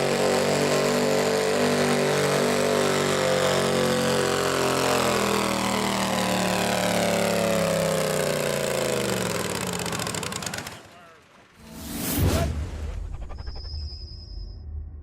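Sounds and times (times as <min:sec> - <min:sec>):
lawn mower engine running: 0:00.0 - 0:10.9.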